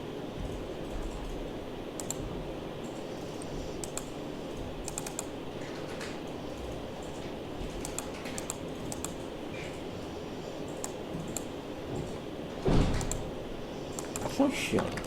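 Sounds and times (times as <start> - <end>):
steady low hum: 0.0 - 15.0
keyboard typing: 2.0 - 2.2, 2.8 - 9.8, 10.6 - 11.5, 13.9 - 15.0.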